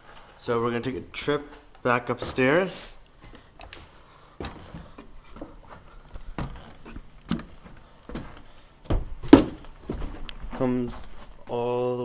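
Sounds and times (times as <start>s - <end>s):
footsteps climbing stairs: 1.2s - 11.3s.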